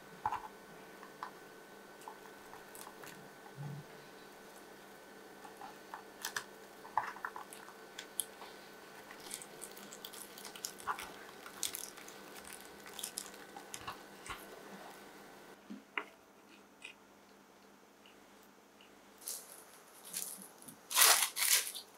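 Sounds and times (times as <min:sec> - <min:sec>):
faint steady hum: 0:00.0 - 0:21.9
food being handled crunching: 0:05.4 - 0:14.5, 0:19.2 - 0:21.9.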